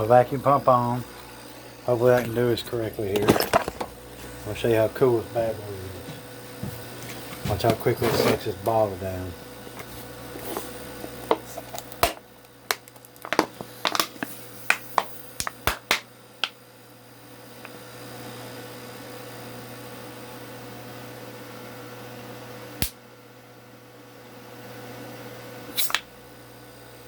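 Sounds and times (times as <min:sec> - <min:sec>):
compressor pump humming: 0:00.0 - 0:20.7.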